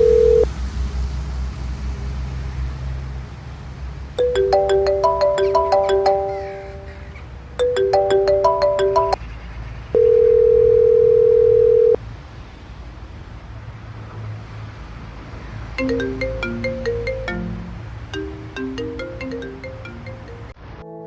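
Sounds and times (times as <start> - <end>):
phone ringtone melody: 0.0 - 0.5, 4.2 - 9.2, 10.0 - 12.0, 15.8 - 20.6.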